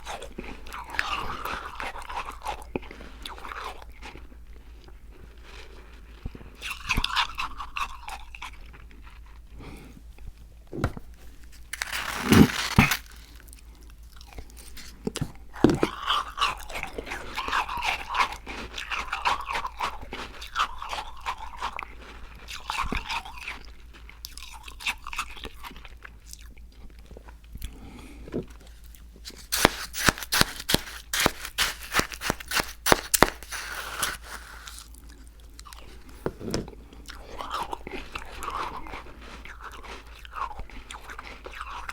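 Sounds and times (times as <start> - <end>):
wet chewing: 5.7 - 27.9, 28.5 - 41.9
crunching ice: 11.4 - 13.6, 29.3 - 35.9.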